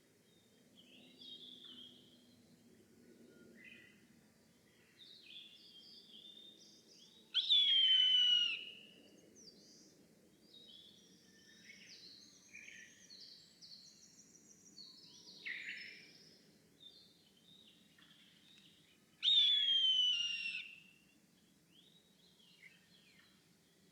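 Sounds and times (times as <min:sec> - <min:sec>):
songbirds chirping: 0:09.0 - 0:19.3, 0:21.0 - 0:23.9.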